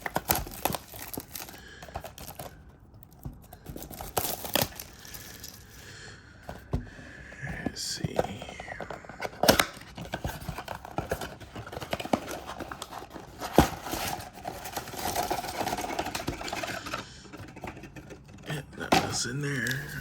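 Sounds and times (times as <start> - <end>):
packaging crinkling and rustling: 0.0 - 5.9, 7.6 - 20.0.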